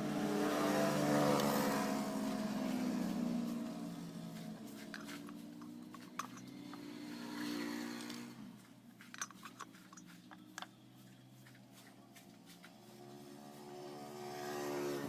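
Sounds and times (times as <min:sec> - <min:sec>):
motorcycle engine running: 0:00.0 - 0:15.0
sharp metallic clicks: 0:04.8 - 0:08.3.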